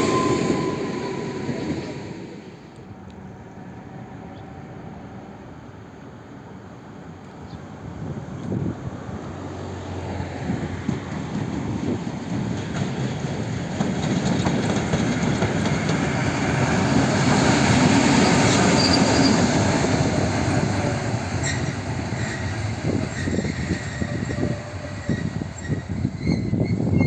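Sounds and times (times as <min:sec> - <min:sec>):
high wheel squeal: 0:00.0 - 0:02.1, 0:17.9 - 0:19.9, 0:21.4 - 0:27.0
diesel locomotive passing: 0:00.0 - 0:27.0.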